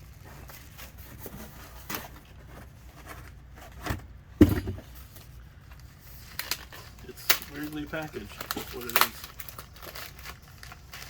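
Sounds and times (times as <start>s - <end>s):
package rustling: 4.9s - 11.0s.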